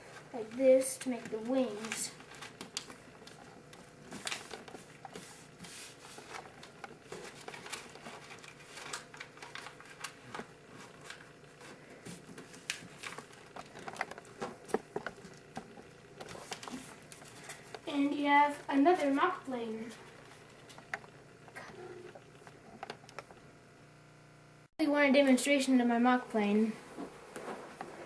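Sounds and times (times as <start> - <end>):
paper crinkling and rustling: 0.1 - 17.8.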